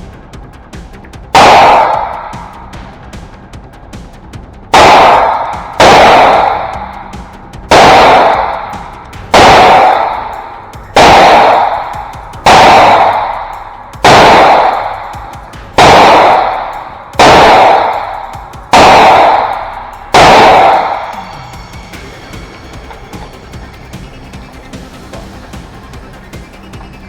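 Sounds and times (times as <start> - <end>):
rifle shots echoing: 1.4 - 2.5, 4.7 - 21.3.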